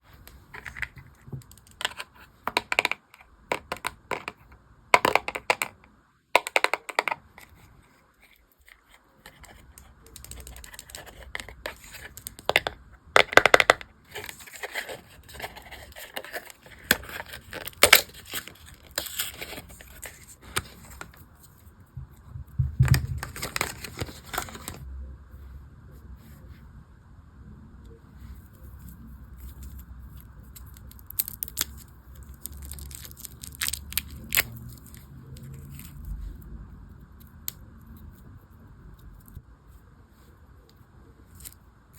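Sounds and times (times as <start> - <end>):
packaging crinkling and tearing: 14.1 - 21.2, 22.9 - 24.8, 30.4 - 36.0.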